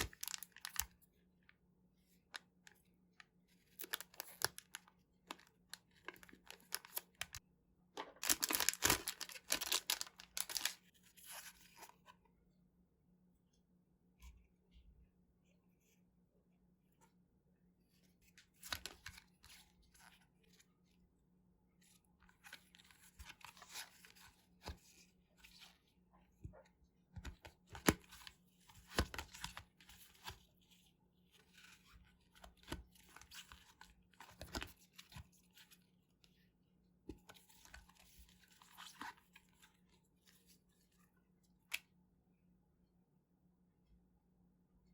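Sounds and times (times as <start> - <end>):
wrapper tearing and crinkling: 0.0 - 0.8, 8.2 - 10.8.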